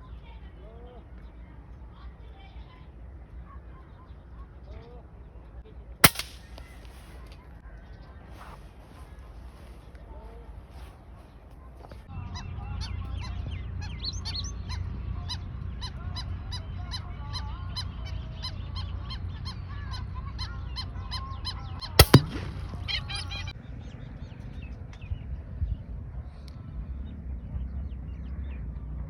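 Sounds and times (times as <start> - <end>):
air rifle shot: 6.0 - 7.1, 22.0 - 23.2.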